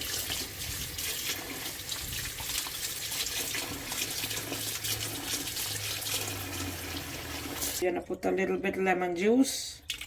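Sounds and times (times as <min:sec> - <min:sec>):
running water splashing: 0:00.0 - 0:07.8.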